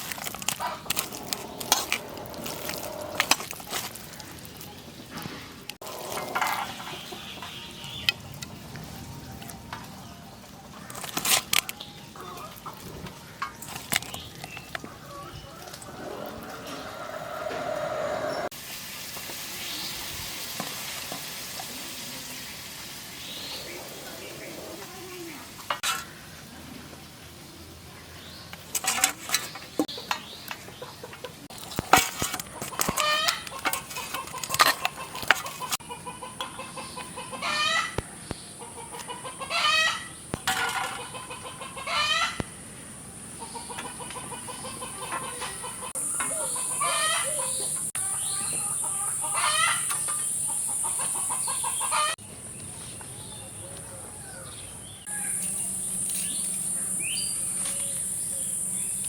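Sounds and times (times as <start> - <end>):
chickens clucking: 0.0 - 8.3, 11.9 - 18.5, 23.2 - 26.1, 28.8 - 42.6, 43.2 - 54.2.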